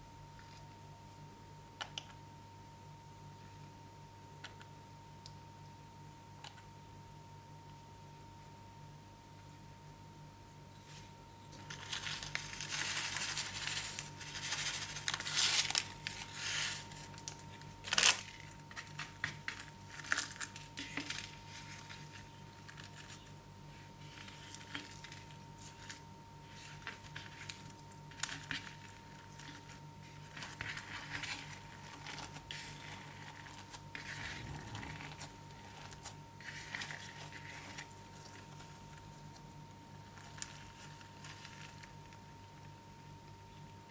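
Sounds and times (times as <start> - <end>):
crunchy slime crackling: 11.6 - 23.3, 24.0 - 42.7.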